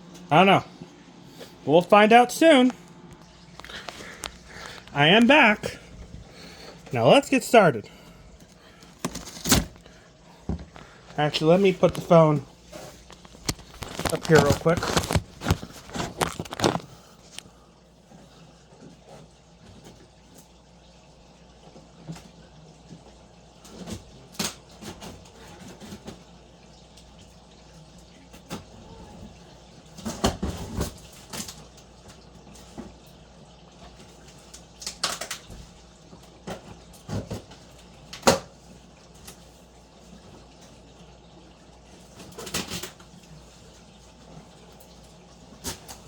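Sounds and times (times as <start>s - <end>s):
packing rustling: 8.8s - 9.9s, 12.7s - 17.0s.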